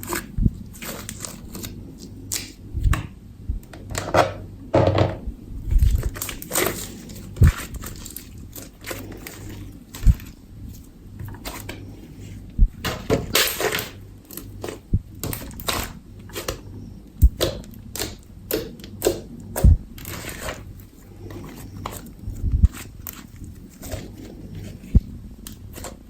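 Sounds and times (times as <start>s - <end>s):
slime squishing with sticky clicks: 17.2s - 20.5s.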